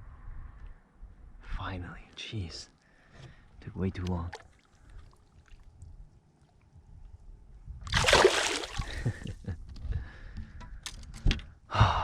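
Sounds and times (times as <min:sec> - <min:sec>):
loud water splash: 0:07.9 - 0:09.0.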